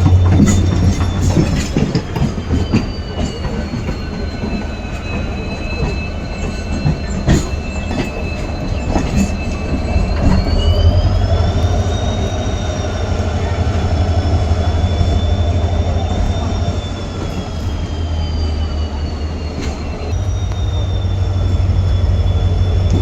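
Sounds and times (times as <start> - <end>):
wheels clicking over rail joints: 0.0 - 17.7
diesel locomotive engine hum: 0.0 - 23.0
high whine: 0.0 - 23.0.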